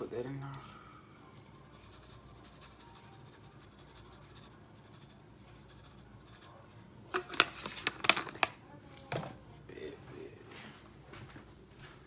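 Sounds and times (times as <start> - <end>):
seasoning shaker rattling: 1.4 - 8.6.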